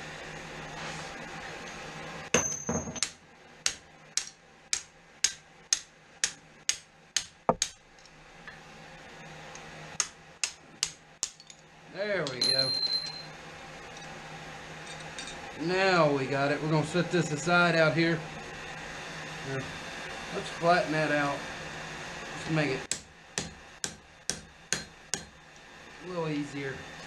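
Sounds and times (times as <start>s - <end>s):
hammer striking steel on anvil: 2.3s - 7.8s, 22.9s - 25.4s.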